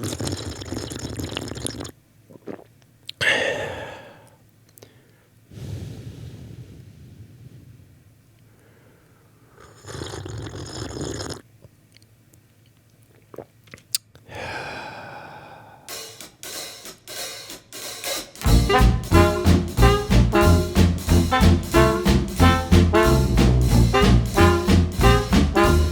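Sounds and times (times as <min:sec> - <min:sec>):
hissing noise: 0:05.5 - 0:08.0.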